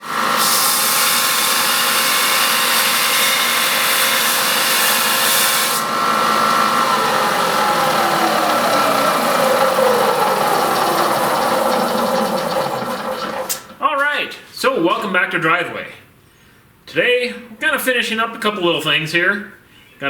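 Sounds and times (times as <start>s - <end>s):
power tool whining: 0.0s - 13.8s.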